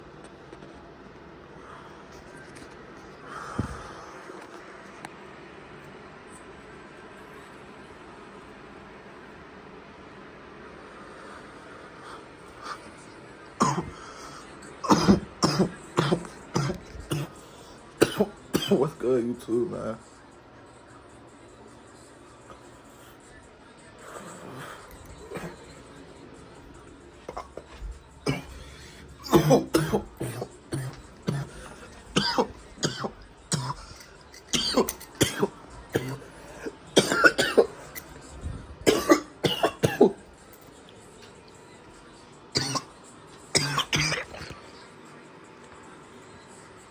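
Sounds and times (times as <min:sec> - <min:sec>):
person coughing hard: 0:13.6 - 0:14.0, 0:14.8 - 0:19.0, 0:24.2 - 0:25.7, 0:27.3 - 0:38.0, 0:38.8 - 0:40.2, 0:42.5 - 0:42.9, 0:43.5 - 0:44.6.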